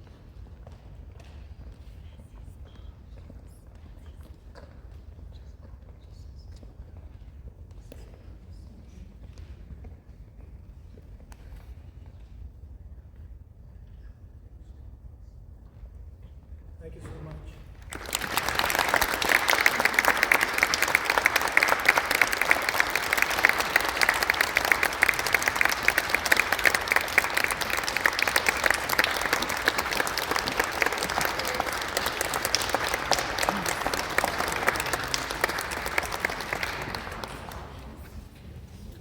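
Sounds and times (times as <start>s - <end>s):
audience applauding: 17.8s - 38.3s.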